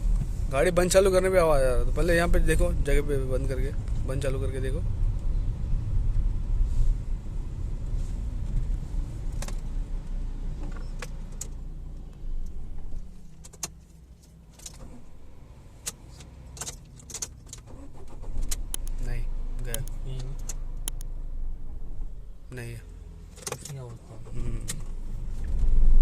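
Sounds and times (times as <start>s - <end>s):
car engine running: 17.7s - 22.5s.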